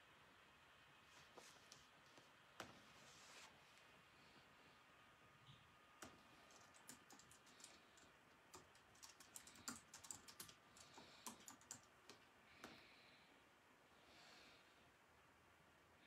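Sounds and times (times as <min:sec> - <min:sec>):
typing on computer keyboard: 0:06.0 - 0:12.2.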